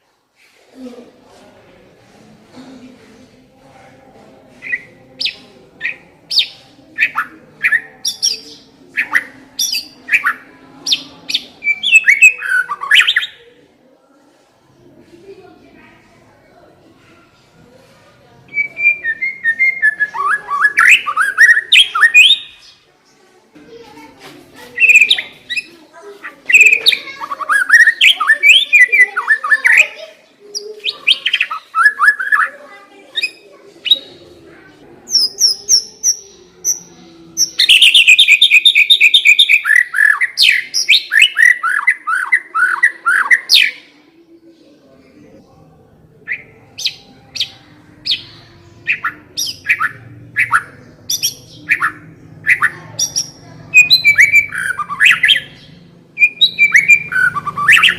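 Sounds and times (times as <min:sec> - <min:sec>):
bird singing whistled phrases: 0:06.4 - 0:13.4, 0:18.5 - 0:22.6, 0:48.9 - 0:55.4, 0:56.2 - 0:57.9.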